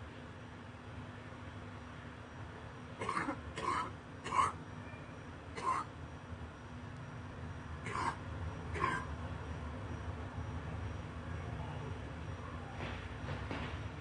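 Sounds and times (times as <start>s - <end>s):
person coughing wetly: 3.0s - 4.6s, 5.6s - 5.9s, 7.9s - 8.2s, 8.8s - 9.1s.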